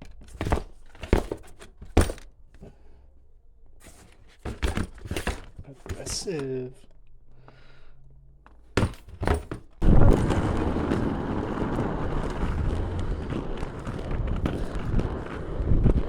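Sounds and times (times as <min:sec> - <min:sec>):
inline skates rolling on pavement: 0:08.5 - 0:16.0
knocks: 0:08.7 - 0:09.8.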